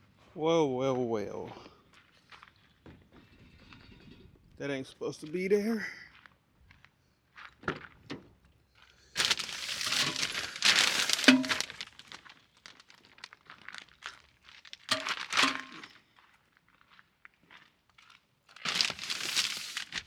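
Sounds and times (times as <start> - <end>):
small crackles: 8.8 - 15.5, 17.9 - 20.0
material crinkling and rustling: 9.2 - 15.9, 18.5 - 20.0.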